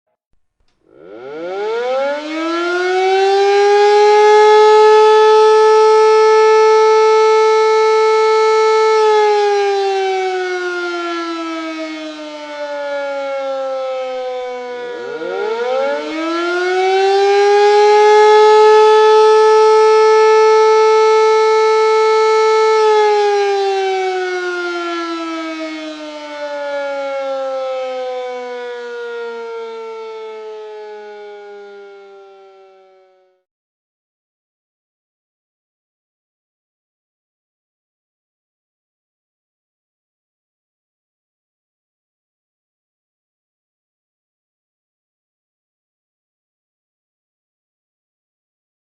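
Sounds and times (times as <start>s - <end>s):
warning siren wailing: 0.7s - 33.4s.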